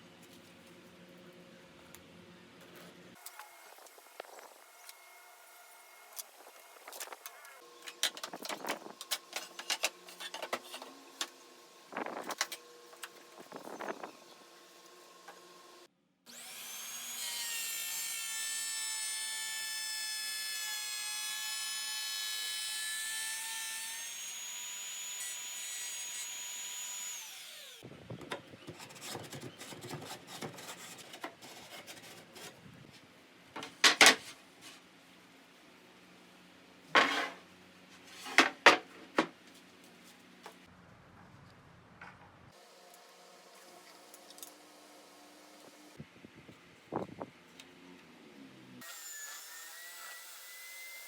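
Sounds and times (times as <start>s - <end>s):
power tool high whine: 16.3s - 27.9s.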